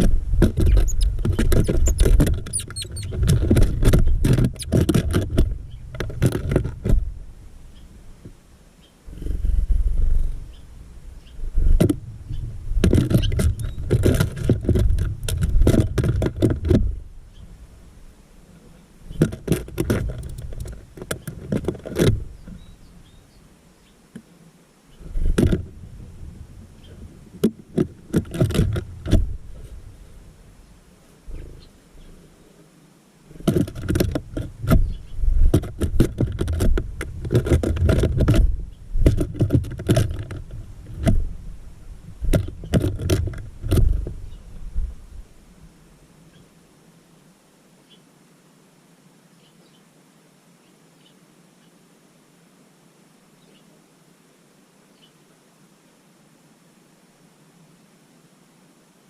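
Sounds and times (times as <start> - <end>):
birds pecking at feeder: 0.0 - 7.2, 11.2 - 17.5, 19.0 - 22.8, 26.8 - 30.1, 33.3 - 41.4, 42.1 - 44.5.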